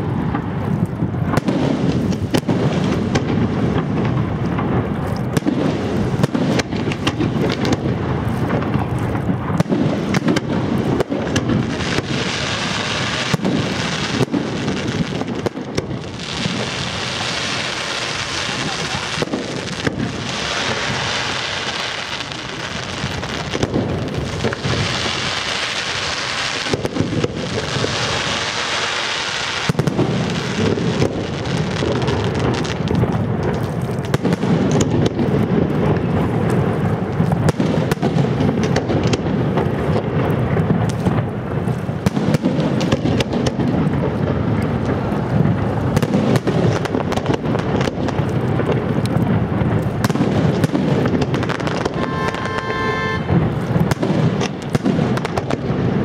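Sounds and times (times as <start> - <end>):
fireworks hissing crackle: 0.0 - 56.0
fireworks rapid bangs: 0.0 - 56.0.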